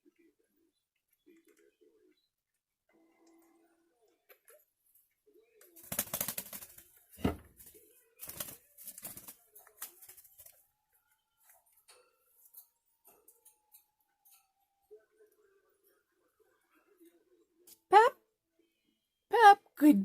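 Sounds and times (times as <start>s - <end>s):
birds rustling and flapping: 5.7s - 10.7s.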